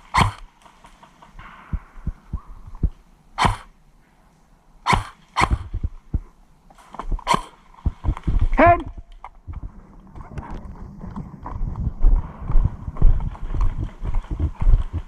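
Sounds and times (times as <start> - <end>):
airsoft gun shots: 0.2 - 0.4, 3.4 - 3.7, 4.9 - 5.8
footsteps thudding: 1.4 - 3.7.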